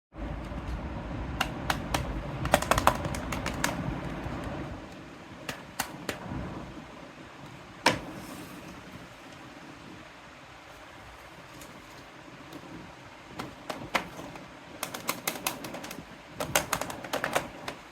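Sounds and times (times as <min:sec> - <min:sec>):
low rumbling background: 0:00.2 - 0:05.4
plastic toy pieces clicking: 0:14.8 - 0:17.8.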